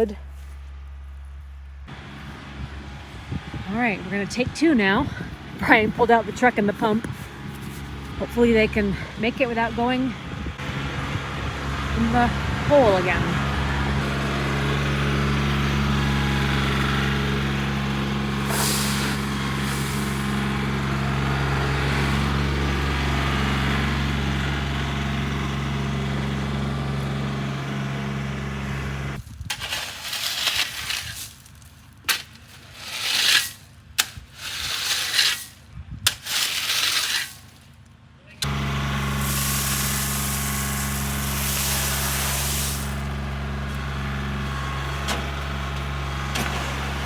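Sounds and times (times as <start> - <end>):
truck engine running: 0.0 - 29.3, 37.5 - 47.0
bursts of hissing or scraping: 18.4 - 20.6, 29.6 - 37.7, 39.0 - 43.2.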